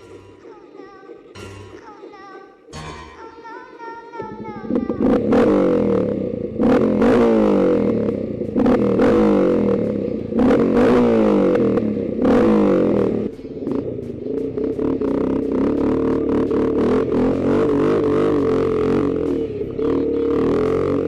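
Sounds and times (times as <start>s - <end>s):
vehicle engine revving: 4.6s - 21.0s.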